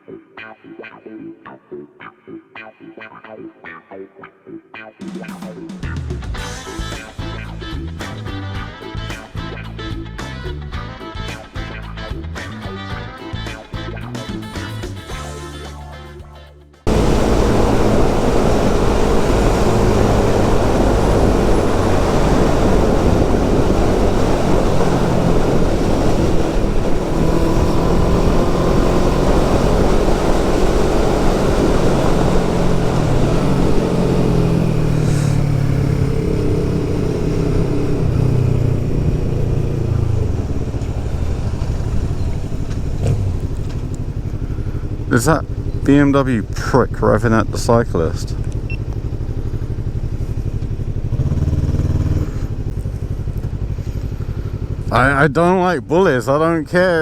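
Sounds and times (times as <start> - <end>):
motorcycle engine running: 5.7 - 15.4, 16.9 - 57.0
heavy wind noise: 16.9 - 35.5.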